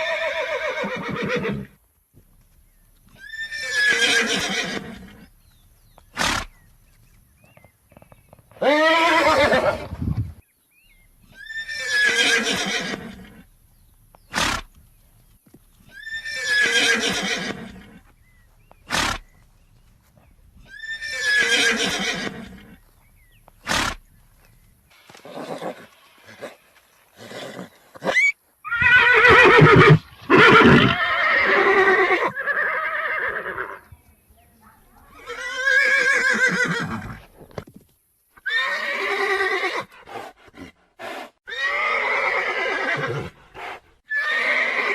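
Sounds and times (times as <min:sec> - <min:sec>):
horses neighing: 0:00.0 - 0:01.8, 0:03.0 - 0:05.4, 0:08.0 - 0:10.0, 0:11.2 - 0:13.5, 0:15.8 - 0:18.1, 0:20.6 - 0:24.1, 0:24.9 - 0:33.9, 0:35.1 - 0:37.6, 0:38.4 - 0:44.9.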